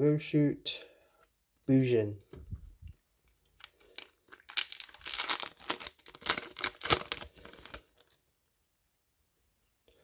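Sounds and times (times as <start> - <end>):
foil pack tearing and crinkling: 3.7 - 8.0.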